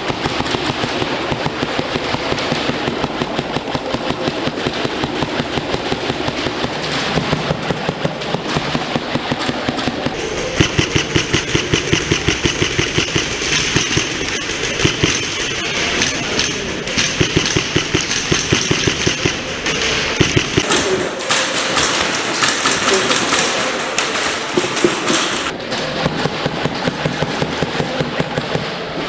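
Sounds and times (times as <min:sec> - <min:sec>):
airsoft guns firing rapid bursts: 0:20.6 - 0:25.5.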